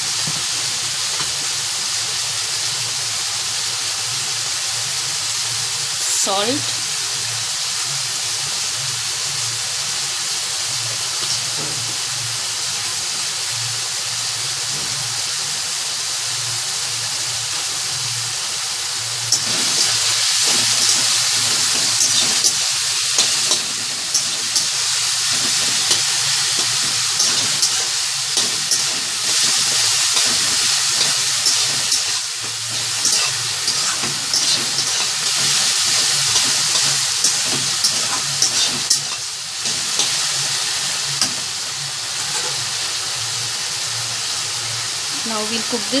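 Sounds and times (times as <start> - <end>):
food sizzling in oil: 0.0 - 46.0
spatula scraping a pan: 19.3 - 40.4.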